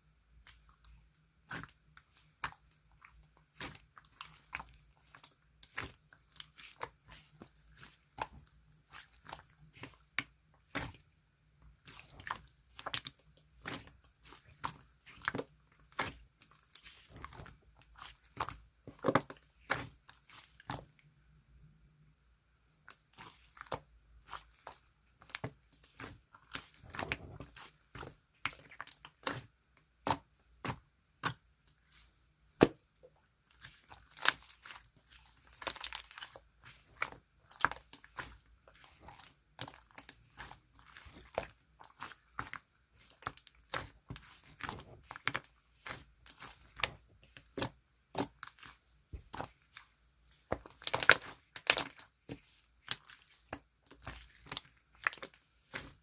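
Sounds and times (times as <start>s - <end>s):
slime clicking and crackling: 33.8s - 56.0s.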